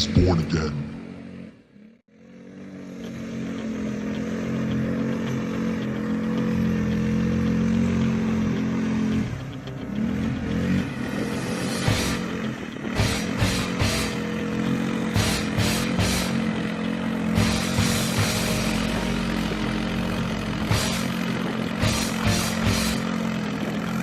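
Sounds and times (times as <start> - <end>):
atv engine running: 0.0 - 24.0.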